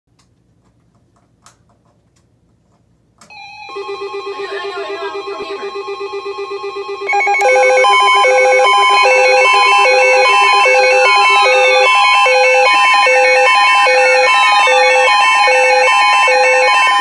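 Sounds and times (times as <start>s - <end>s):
alternating high and low beeps: 3.3s - 17.0s.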